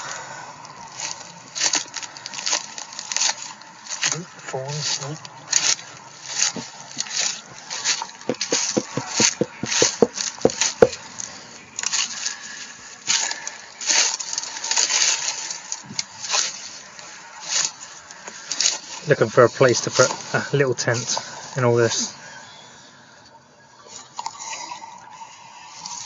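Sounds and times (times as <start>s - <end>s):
sharp cracks of twigs: 0.0s - 19.2s
twigs snapping and rustling: 0.6s - 19.2s.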